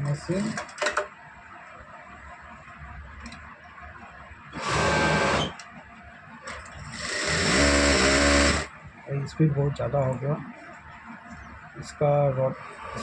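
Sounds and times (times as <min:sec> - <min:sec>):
sewing machine running: 0:04.6 - 0:05.5, 0:06.9 - 0:08.7.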